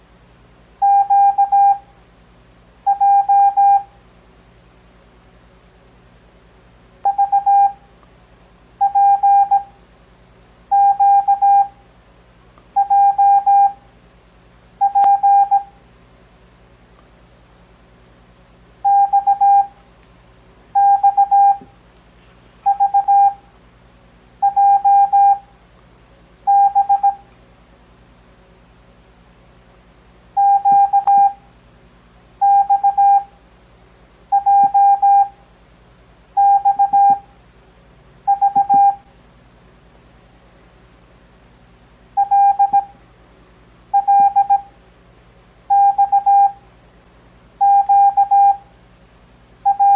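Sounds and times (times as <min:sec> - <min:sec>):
morse code beeps: 0:00.8 - 0:01.8, 0:02.9 - 0:03.9, 0:07.1 - 0:07.8, 0:08.8 - 0:09.7, 0:10.7 - 0:11.7, 0:12.8 - 0:13.8, 0:14.8 - 0:15.7, 0:18.8 - 0:19.7, 0:20.8 - 0:21.6, 0:22.6 - 0:23.4, 0:24.4 - 0:25.4, 0:26.5 - 0:27.2, 0:30.4 - 0:31.4, 0:32.4 - 0:33.3, 0:34.3 - 0:35.4, 0:36.4 - 0:37.2, 0:38.3 - 0:39.0, 0:42.2 - 0:42.9, 0:44.0 - 0:44.7, 0:45.7 - 0:46.6, 0:47.6 - 0:48.6, 0:49.7 - 0:49.9.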